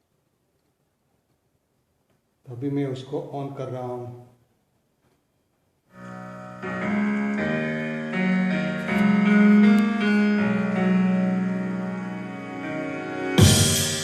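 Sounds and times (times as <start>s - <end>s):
keyboard chords through loudspeaker: 5.9s - 14.0s.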